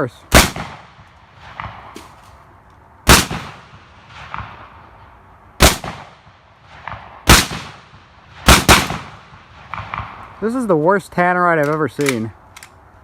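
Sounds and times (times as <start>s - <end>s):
rifle shots: 0.3s - 2.2s, 3.0s - 4.7s, 5.6s - 10.2s.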